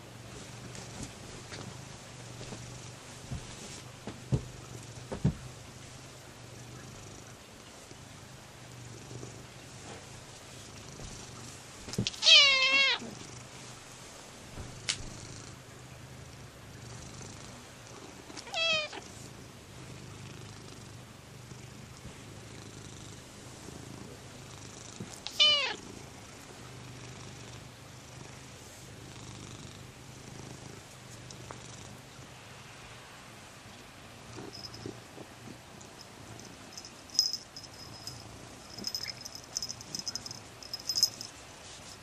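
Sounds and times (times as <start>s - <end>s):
cat purring: 0.0s - 11.8s, 14.8s - 32.4s, 33.7s - 41.8s
cat meowing: 12.1s - 13.0s, 18.4s - 19.0s, 25.3s - 25.8s.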